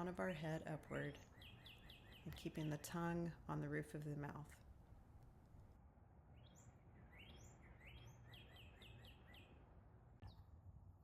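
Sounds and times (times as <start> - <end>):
songbird whistling: 6.4 - 9.6
faint low rumble: 9.5 - 11.0.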